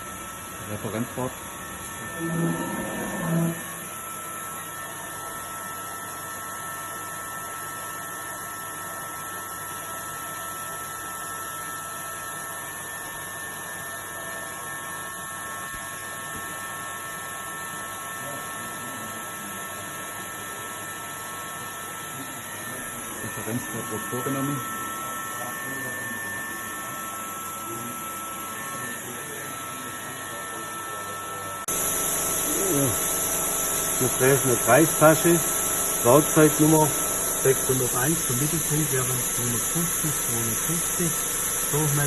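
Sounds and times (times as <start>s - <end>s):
machine whine over hiss: 0.6s - 6.2s, 21.5s - 27.0s, 28.6s - 42.0s.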